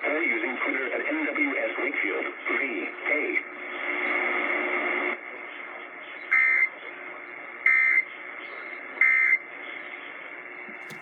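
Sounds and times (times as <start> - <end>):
radio hiss: 0.0 - 5.9.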